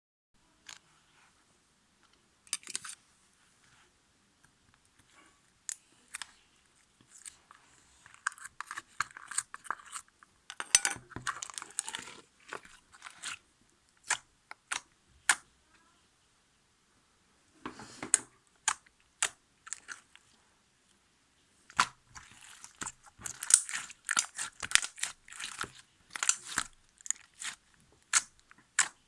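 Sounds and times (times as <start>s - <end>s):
ice slime crust crackling: 21.7s - 29.0s.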